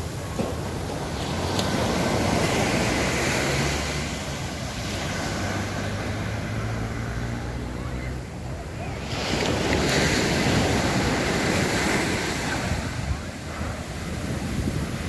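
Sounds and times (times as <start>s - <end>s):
sea surf washing ashore: 0.0s - 15.0s
wind on microphone: 9.0s - 15.0s.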